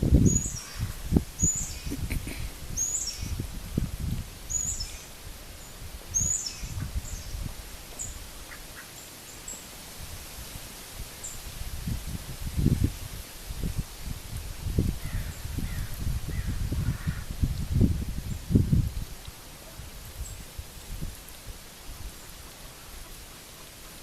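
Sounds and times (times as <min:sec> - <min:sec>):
bird chirping: 0:01.4 - 0:03.4, 0:06.2 - 0:07.4.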